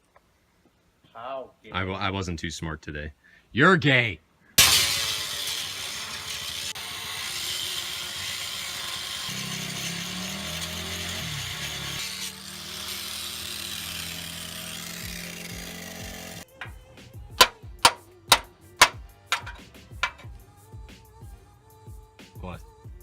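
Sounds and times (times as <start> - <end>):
power grinder grinding steel: 4.6 - 16.8, 17.4 - 20.3.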